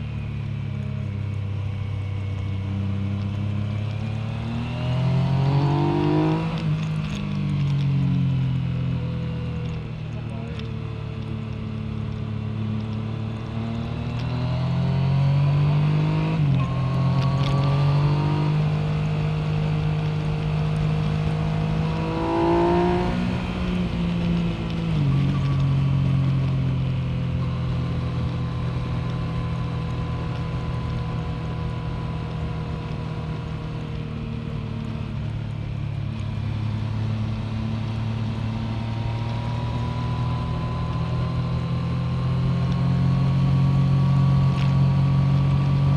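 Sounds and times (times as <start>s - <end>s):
motorcycle engine revving: 2.5s - 9.2s, 11.3s - 34.8s.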